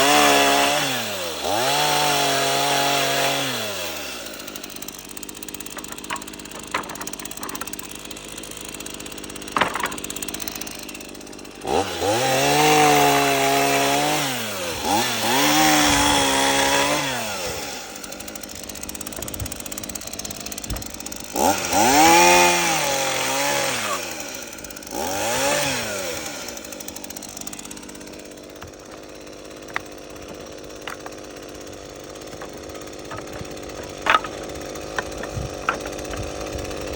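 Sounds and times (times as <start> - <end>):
chainsaw idling and revving: 0.0 - 36.9.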